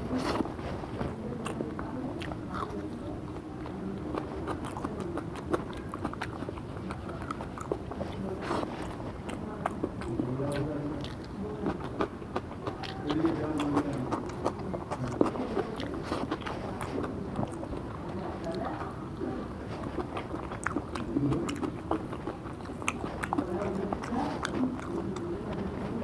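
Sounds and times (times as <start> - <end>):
person chewing food: 0.0 - 26.0.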